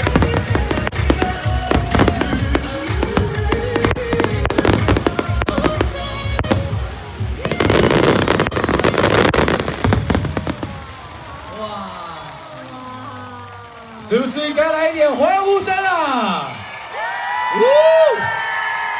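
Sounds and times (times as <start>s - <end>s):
background music: 0.0s - 11.0s
fireworks bursting: 0.0s - 12.8s.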